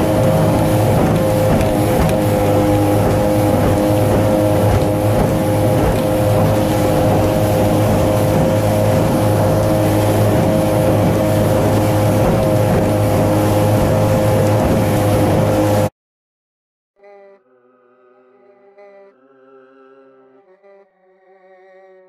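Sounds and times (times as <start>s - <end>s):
motorboat engine running: 0.0s - 15.9s.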